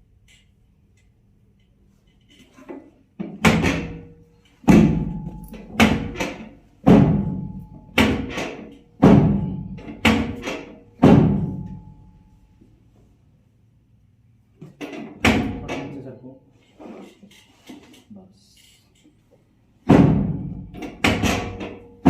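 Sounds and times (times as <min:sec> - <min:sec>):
deep drum hits: 0:04.7 - 0:06.2, 0:06.8 - 0:08.3, 0:09.0 - 0:10.4, 0:11.0 - 0:11.9, 0:19.8 - 0:21.5.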